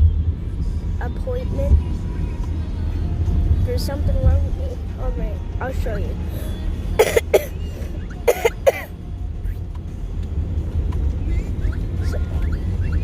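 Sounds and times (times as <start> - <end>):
person coughing: 7.0 - 7.6, 8.2 - 8.9.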